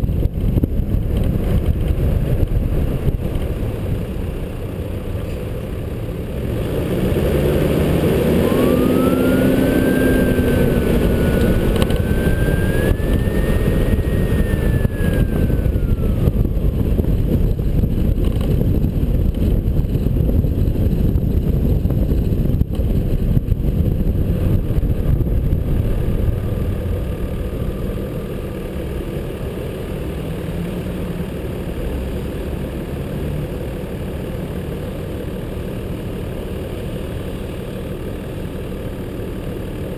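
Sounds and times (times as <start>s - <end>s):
wind noise: 0.0s - 5.4s, 6.6s - 28.6s
tyre noise on road: 0.0s - 39.9s
vehicle engine: 0.0s - 39.9s
faint whine: 8.0s - 31.3s.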